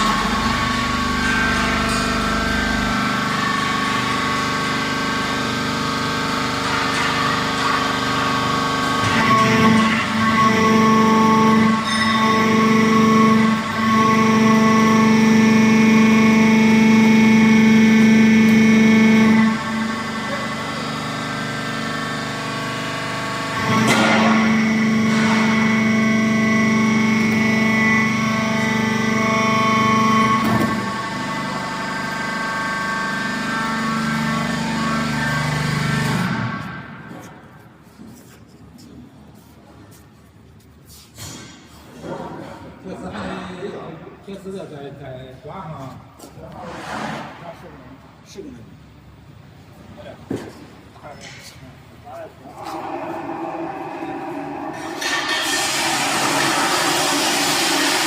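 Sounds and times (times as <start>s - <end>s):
louder deeper hum: 0.0s - 37.1s, 52.5s - 58.0s
hydraulic machine humming: 0.0s - 37.6s, 52.4s - 58.0s.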